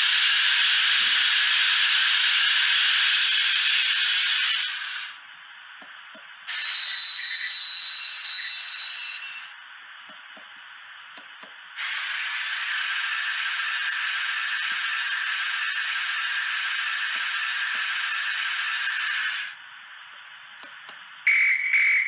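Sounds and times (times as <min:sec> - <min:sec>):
loud steam hiss: 0:00.0 - 0:05.2, 0:11.8 - 0:19.6
quiet background steam hiss: 0:04.1 - 0:22.0.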